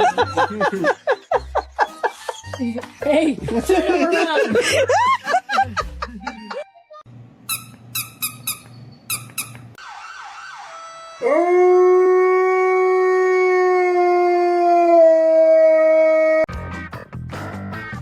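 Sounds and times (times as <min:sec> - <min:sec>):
dog howling: 0:11.2 - 0:16.5.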